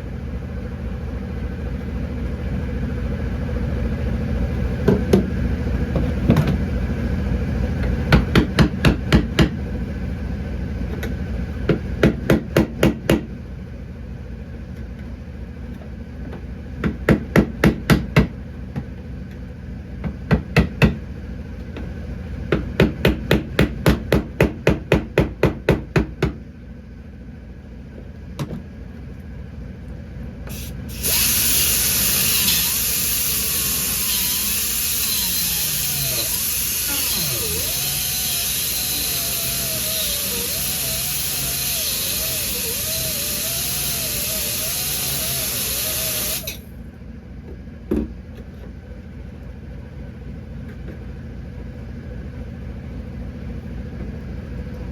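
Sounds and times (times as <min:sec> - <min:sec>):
steady machine hum: 0:26.6 - 0:50.6
high-pitched power tool: 0:30.5 - 0:46.7.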